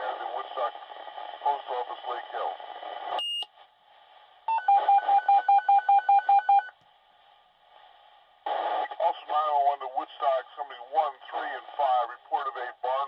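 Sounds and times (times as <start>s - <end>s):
faint radio hiss: 0.0s - 5.2s, 6.7s - 13.0s
rapid pager beeps: 4.5s - 6.7s.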